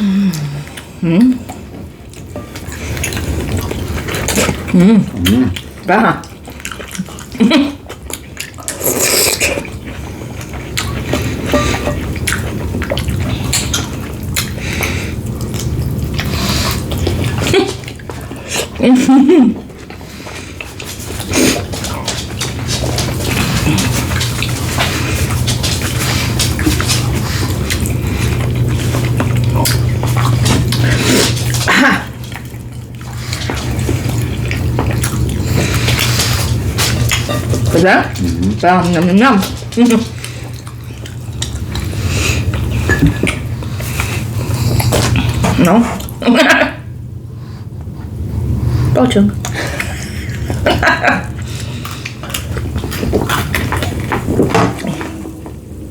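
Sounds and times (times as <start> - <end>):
person humming mm: 0.0 - 1.5
wet chewing: 0.0 - 46.5, 47.7 - 55.8
steady low hum: 0.0 - 55.9.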